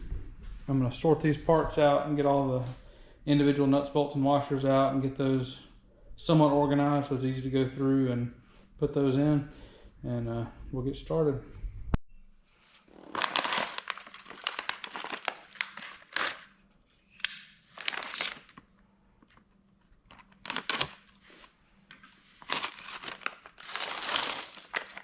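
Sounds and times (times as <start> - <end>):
metal nuts and bolts clinking: 13.1 - 16.6, 17.2 - 18.5, 22.5 - 25.0.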